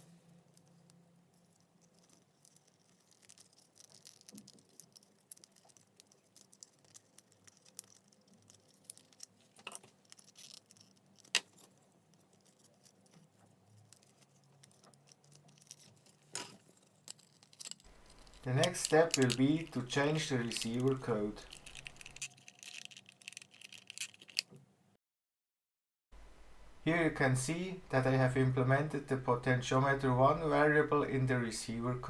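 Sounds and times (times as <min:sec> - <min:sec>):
plastic parts and tools clicking: 0:01.6 - 0:24.6.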